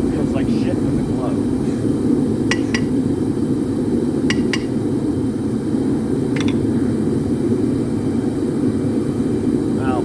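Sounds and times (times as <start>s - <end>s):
forge rushing noise: 0.0s - 6.3s.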